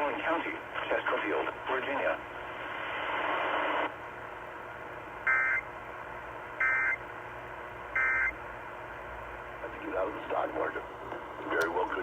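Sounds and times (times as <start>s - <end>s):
radio background hiss: 0.0s - 4.0s, 9.5s - 12.0s.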